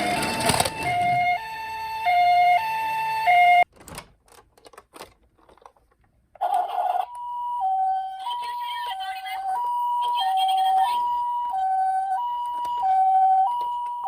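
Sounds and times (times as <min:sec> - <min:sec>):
toy ambulance two-tone siren: 0:00.0 - 0:03.7, 0:06.4 - 0:14.0.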